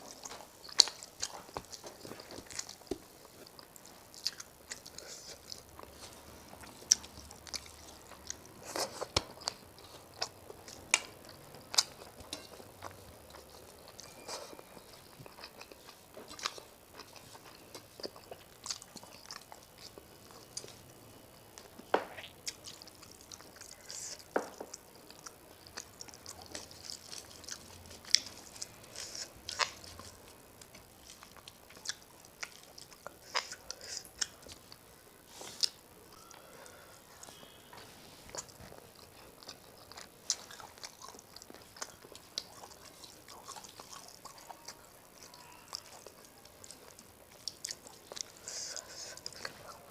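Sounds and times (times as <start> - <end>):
wet chewing and mouth smacks: 37.2 - 49.9.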